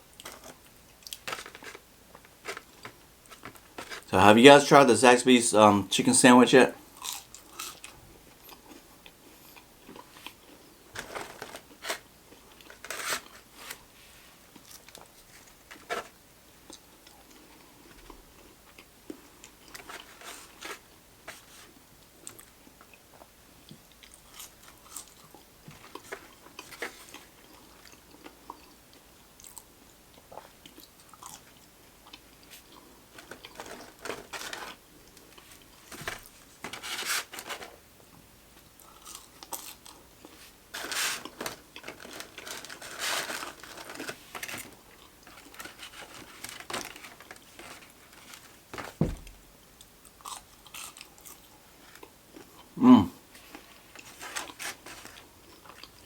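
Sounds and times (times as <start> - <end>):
crunchy food chewing: 7.0 - 13.4, 22.2 - 28.8, 29.4 - 36.4, 38.8 - 40.5, 50.1 - 52.7, 53.4 - 56.0.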